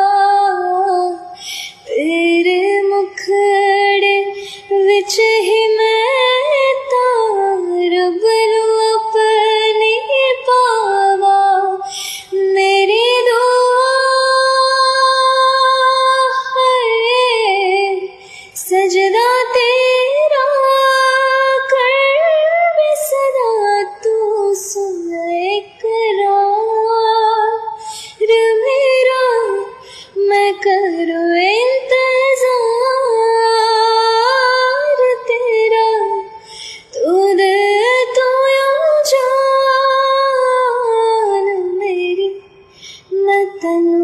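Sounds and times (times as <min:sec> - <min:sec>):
woman singing: 0:00.0 - 0:44.0
singer breathing: 0:01.3 - 0:01.9, 0:04.3 - 0:04.7, 0:11.8 - 0:12.4, 0:18.2 - 0:18.6, 0:27.7 - 0:28.2, 0:29.8 - 0:30.2, 0:36.3 - 0:36.9, 0:42.6 - 0:43.1.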